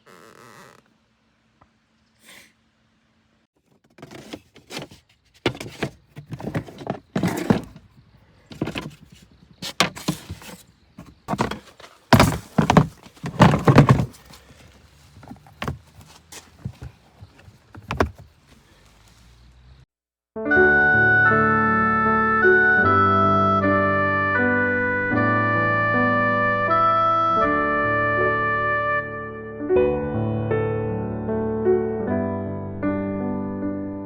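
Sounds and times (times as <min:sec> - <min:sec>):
thumps knocks and scraping: 0:03.6 - 0:19.3.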